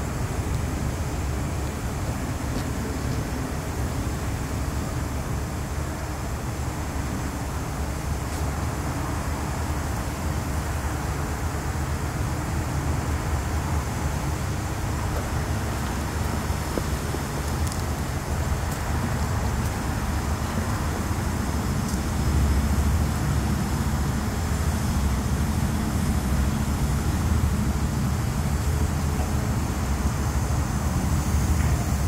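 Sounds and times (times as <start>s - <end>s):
crane engine rumbling: 0.0s - 32.0s.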